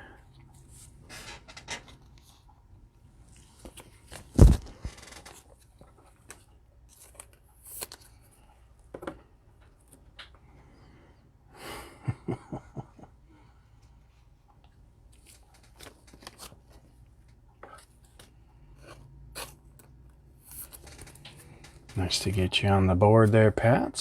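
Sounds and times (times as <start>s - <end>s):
trading cards clicking and rustling: 15.1s - 22.4s.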